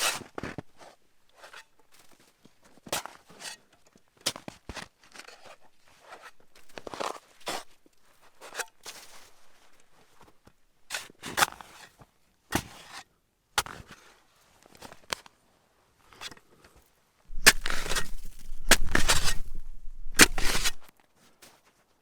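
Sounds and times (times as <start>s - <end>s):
low rumble: 17.3s - 20.8s
crunching in snow: 17.3s - 20.9s.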